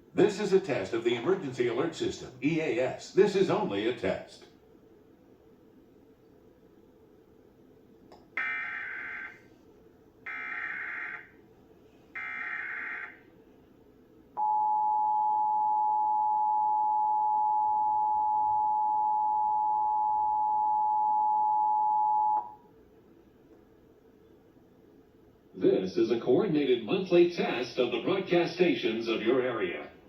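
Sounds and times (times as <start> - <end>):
harsh buzzy data bursts: 8.4 - 9.4, 10.3 - 11.3, 12.2 - 13.2.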